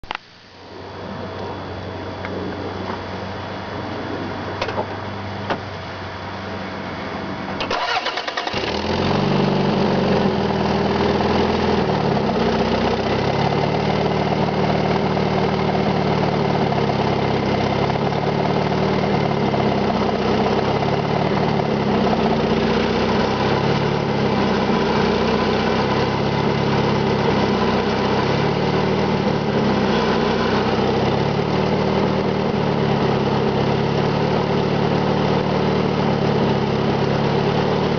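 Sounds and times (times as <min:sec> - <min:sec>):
car engine cranking and idling: 0:07.5 - 0:37.9.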